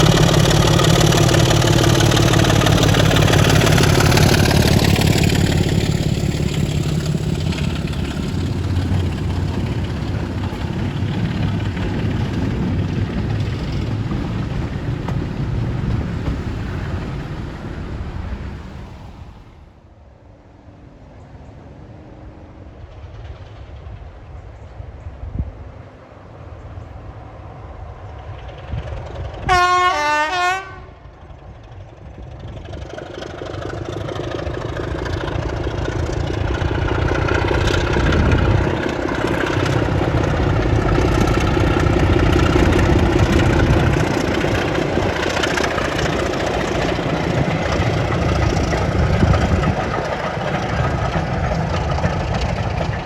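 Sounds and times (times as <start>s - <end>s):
locomotive engine and wheel noise: 0.0s - 53.0s
diesel locomotive horn: 29.4s - 31.0s.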